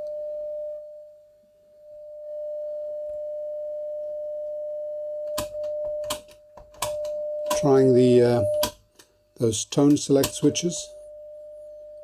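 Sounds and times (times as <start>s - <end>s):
sharp clicks: 5.3s - 7.7s
steady test tone from loudspeaker: 7.0s - 8.8s, 9.4s - 12.0s.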